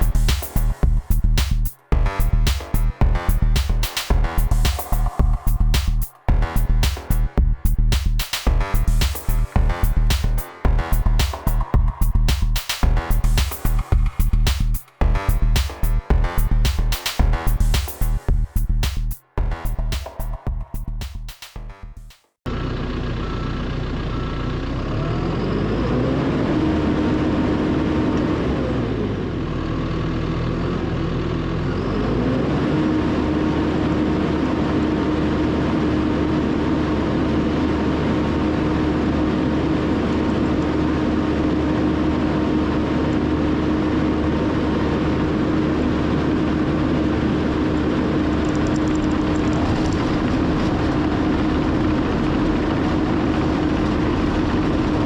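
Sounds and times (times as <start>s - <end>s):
steady whine: 0.0s - 21.2s
diesel engine revving: 22.5s - 35.1s.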